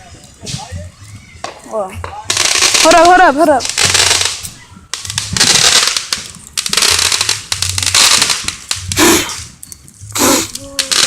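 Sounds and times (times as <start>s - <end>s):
firework crackling pops: 0.4s - 11.0s
firework hiss: 2.2s - 11.0s.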